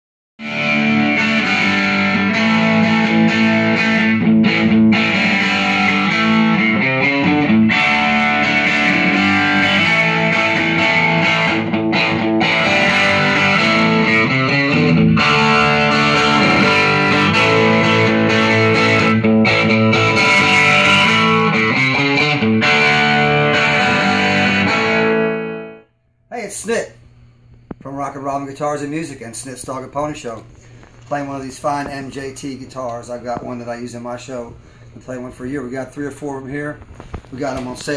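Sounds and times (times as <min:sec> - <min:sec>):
distorted electric guitar: 0:00.4 - 0:28.1.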